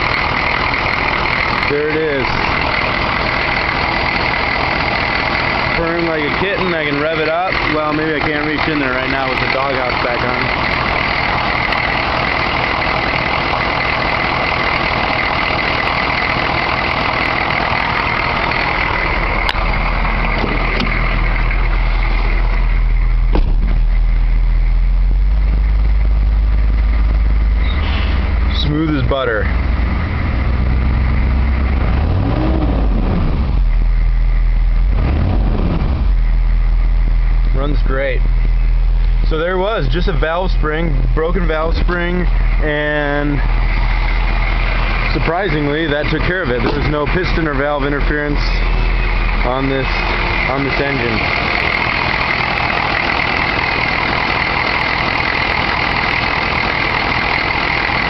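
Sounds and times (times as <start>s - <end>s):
diesel engine idling: 0.0s - 58.0s.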